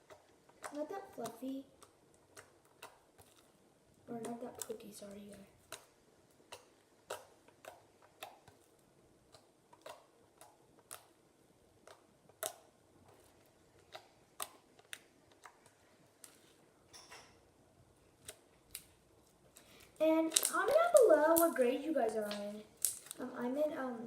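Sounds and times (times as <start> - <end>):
slime clicking and popping: 4.2 - 4.9, 5.6 - 11.2, 11.8 - 12.7, 20.1 - 23.2.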